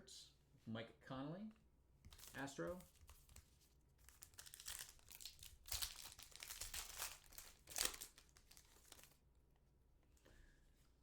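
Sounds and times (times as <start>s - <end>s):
foil pack tearing and crinkling: 2.1s - 2.4s, 4.1s - 9.2s.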